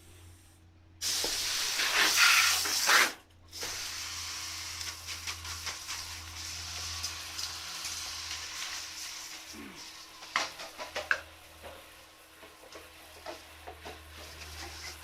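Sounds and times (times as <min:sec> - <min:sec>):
water spraying onto metal: 0:01.0 - 0:11.5.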